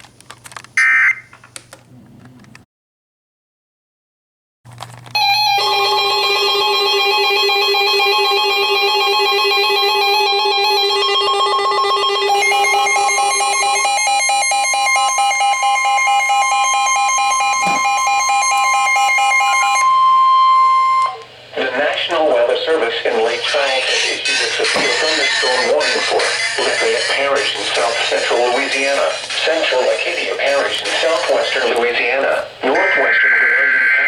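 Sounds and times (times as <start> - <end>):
warbling electronic alarm: 5.2 - 21.3, 32.8 - 34.0.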